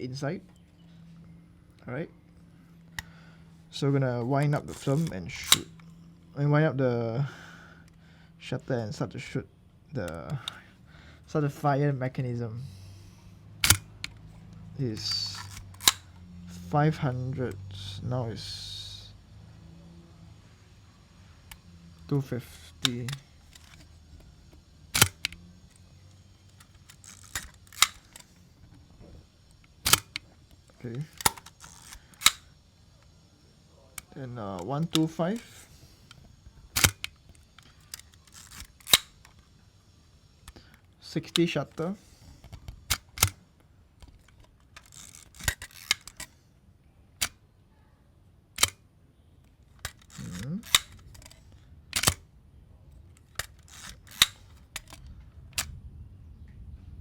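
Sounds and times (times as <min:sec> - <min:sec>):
faint rasp and click: 0:00.4 - 0:06.2, 0:12.2 - 0:18.7, 0:19.6 - 0:46.5, 0:48.6 - 0:48.8, 0:49.4 - 0:52.3, 0:52.9 - 0:55.8
camera shutter clack: 0:15.0 - 0:16.2, 0:24.9 - 0:25.8, 0:29.8 - 0:30.2, 0:53.4 - 0:55.0.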